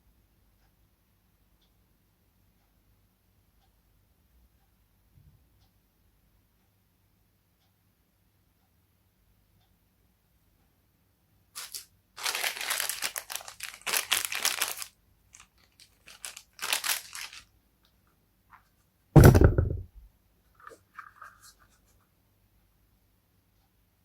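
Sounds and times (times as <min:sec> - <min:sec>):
packaging tearing and crinkling: 0:11.6 - 0:17.4
heavy thump: 0:19.2 - 0:20.0.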